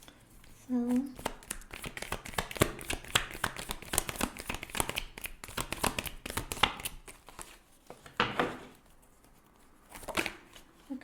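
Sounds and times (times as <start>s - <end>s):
cards being shuffled: 0.4s - 8.1s.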